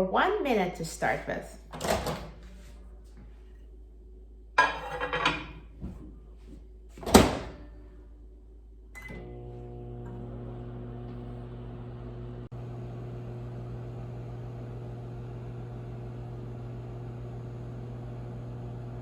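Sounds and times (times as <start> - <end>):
microwave door shutting: 7.0 - 7.6
microwave oven humming: 7.1 - 19.0.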